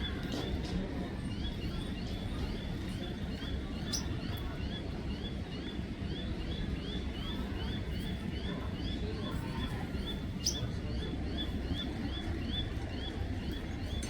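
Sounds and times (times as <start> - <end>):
small bird chirping: 10.4 - 10.6.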